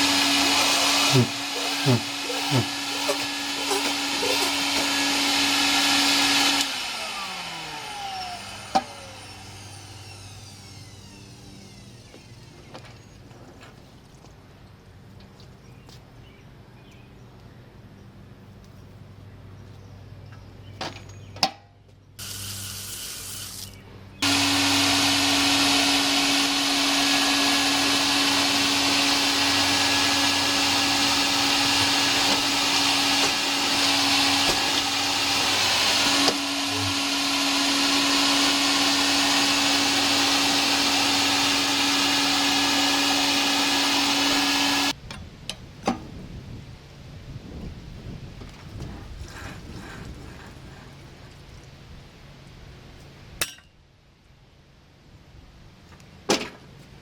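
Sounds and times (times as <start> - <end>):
vacuum cleaner motor rushing: 0.0 - 13.1, 23.6 - 45.0.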